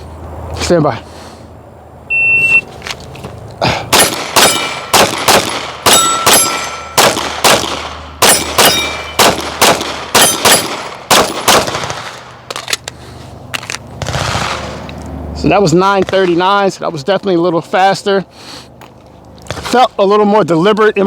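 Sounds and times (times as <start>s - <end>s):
bullets clanging on steel target: 3.9s - 5.2s, 5.8s - 11.5s
pistol shots: 3.9s - 12.3s.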